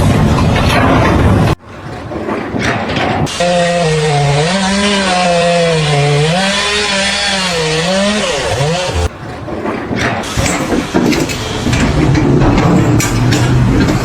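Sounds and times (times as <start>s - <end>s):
power saw cutting: 1.9s - 14.0s.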